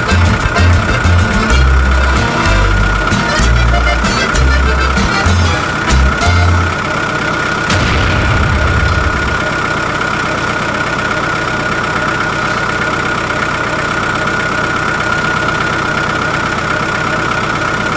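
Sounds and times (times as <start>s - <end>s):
deep rumble: 7.7s - 10.0s.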